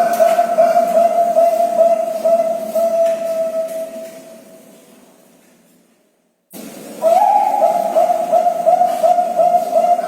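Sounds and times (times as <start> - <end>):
dove cooing trill: 0.0 - 4.5, 7.0 - 10.0.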